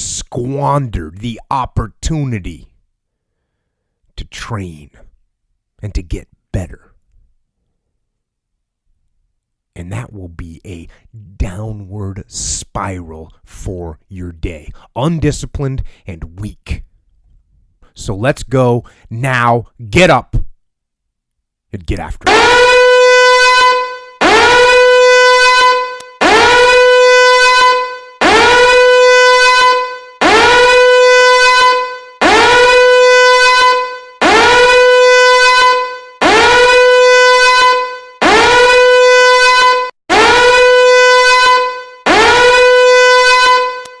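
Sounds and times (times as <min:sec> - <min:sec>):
horn-like alarm blasts: 0:22.3 - 0:44.0.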